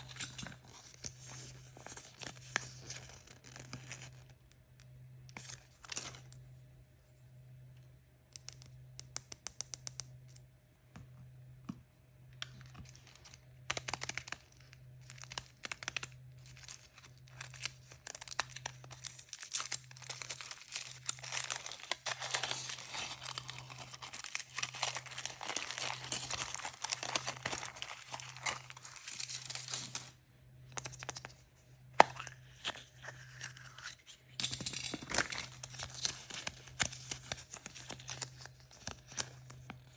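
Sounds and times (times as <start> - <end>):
packaging tearing and crinkling: 12.9 - 30.1, 32.0 - 39.9.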